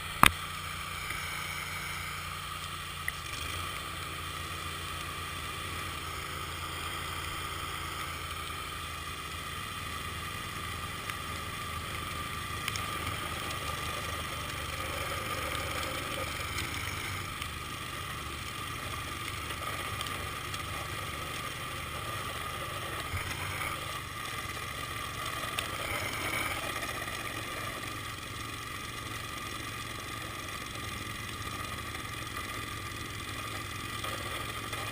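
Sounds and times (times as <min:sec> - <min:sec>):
snowblower engine hum and whine: 0:00.0 - 0:34.9
sharp click: 0:00.2 - 0:00.4.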